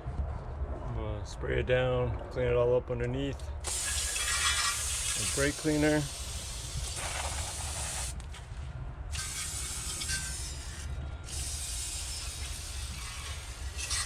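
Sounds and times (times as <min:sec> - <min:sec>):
aerosol spray hissing: 0:03.7 - 0:08.2, 0:09.2 - 0:14.0.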